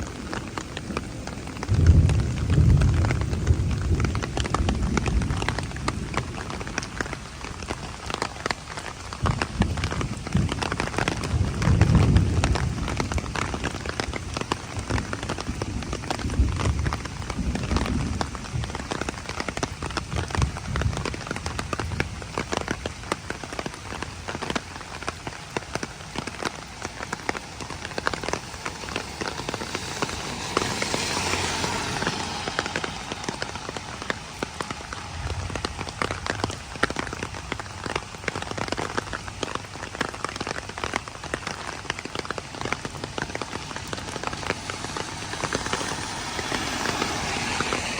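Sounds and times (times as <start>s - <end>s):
heavy rain pattering: 0.0s - 47.9s
low rumble: 26.6s - 36.8s.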